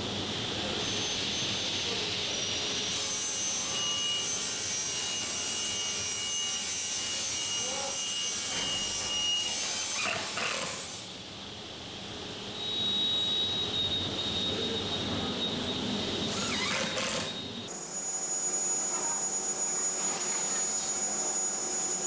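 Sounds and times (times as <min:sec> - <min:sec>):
small electric motor whining: 0:16.3 - 0:22.0.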